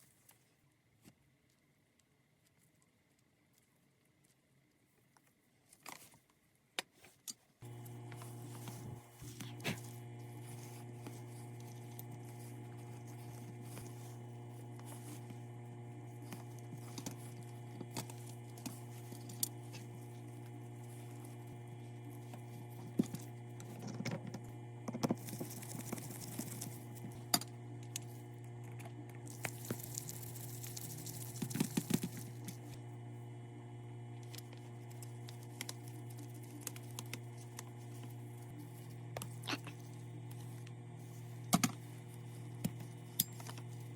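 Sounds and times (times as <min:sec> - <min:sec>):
electrical hum: 0:07.6 - 0:43.9
small parts clicking and tapping: 0:22.3 - 0:32.8, 0:34.2 - 0:40.8, 0:41.4 - 0:43.9.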